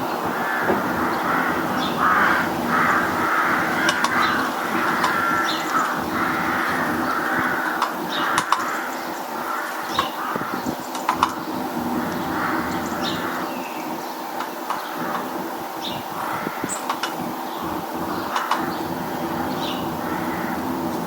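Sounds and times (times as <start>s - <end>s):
small birds chipping: 0.0s - 21.0s
crow cawing: 0.2s - 13.8s, 14.9s - 15.4s, 16.1s - 21.0s.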